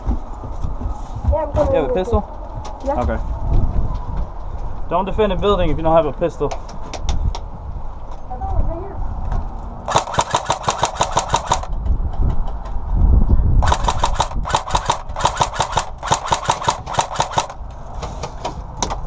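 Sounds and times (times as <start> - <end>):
low rumble: 0.0 - 6.3, 11.4 - 16.1
airsoft guns firing bursts: 9.9 - 11.7, 13.6 - 17.6.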